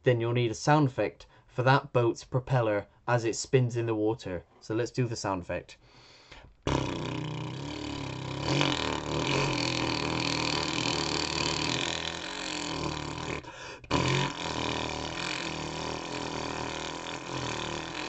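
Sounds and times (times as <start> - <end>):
man imitating boat propeller: 6.7 - 18.0.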